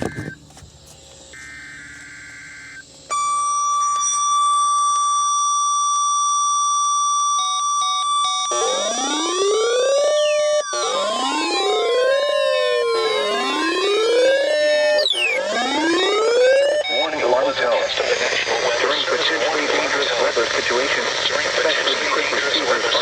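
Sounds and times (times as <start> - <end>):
steady warning alarm tone: 0.0 - 23.0
warbling data header tones: 7.8 - 23.0
rising siren-like sound: 8.5 - 17.4.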